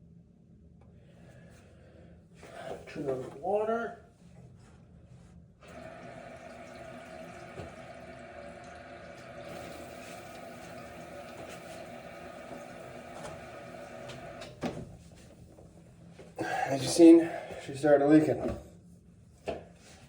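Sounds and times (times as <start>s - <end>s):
water rushing into filter: 5.6s - 14.7s.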